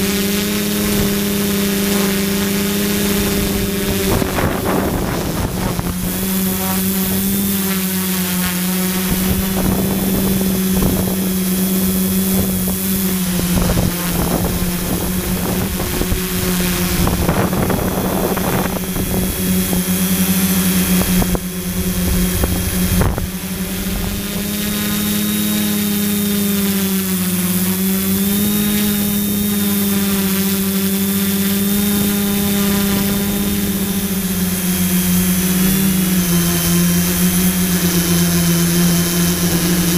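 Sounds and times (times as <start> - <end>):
drone propellers humming: 0.0 - 39.9
wind buffeting microphone: 0.8 - 7.5, 9.0 - 24.9.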